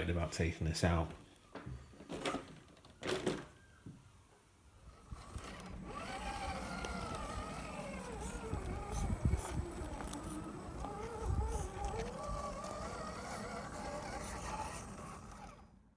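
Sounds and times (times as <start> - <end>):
small electric motor whining: 4.8 - 15.9.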